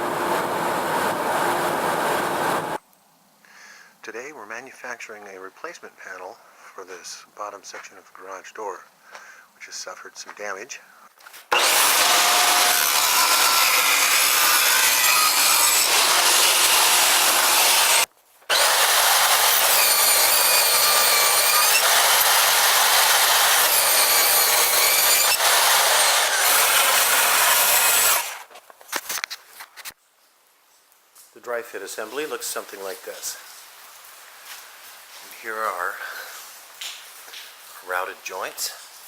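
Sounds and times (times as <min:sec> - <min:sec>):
power tool cutting wood: 0:00.0 - 0:02.8, 0:11.5 - 0:28.5.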